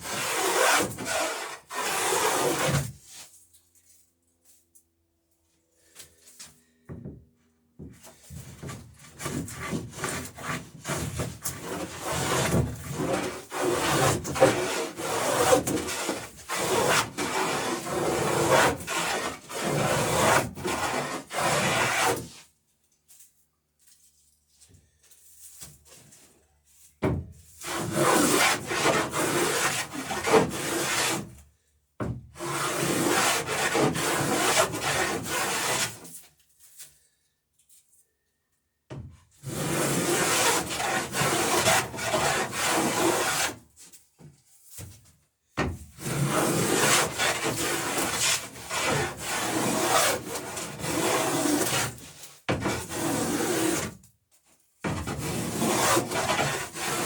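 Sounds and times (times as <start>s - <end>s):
hand plane shaving wood: 0.0s - 3.2s, 8.4s - 22.4s, 27.6s - 31.4s, 32.4s - 36.2s, 39.4s - 43.6s, 46.0s - 54.0s, 54.8s - 57.0s.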